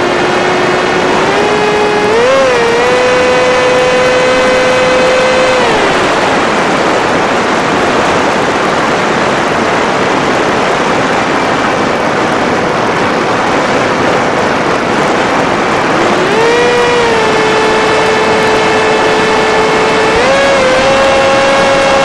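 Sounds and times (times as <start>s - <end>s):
electric motor whine: 0.0s - 7.6s, 15.8s - 22.0s.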